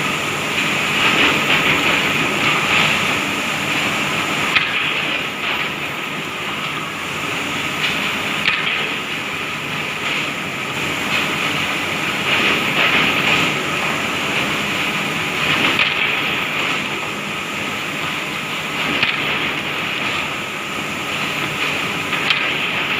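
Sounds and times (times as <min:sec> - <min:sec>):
woodworking machinery running: 0:00.0 - 0:22.9.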